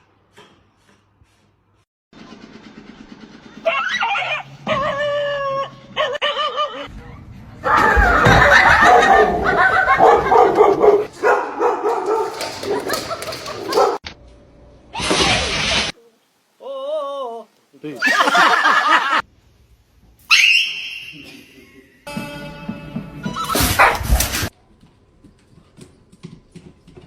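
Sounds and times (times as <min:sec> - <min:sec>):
dog barking and yelping: 0:03.6 - 0:06.9, 0:07.7 - 0:14.0, 0:23.7 - 0:24.3
dog whining: 0:03.6 - 0:06.9.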